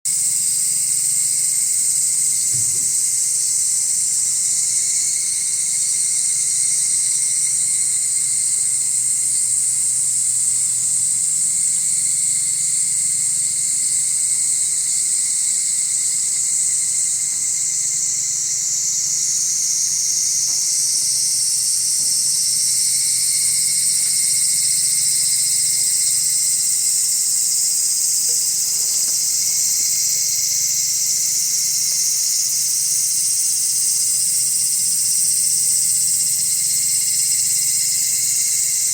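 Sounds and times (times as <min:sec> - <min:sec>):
cicadas droning: 0:00.1 - 0:38.9
lower insect tone: 0:00.1 - 0:38.9.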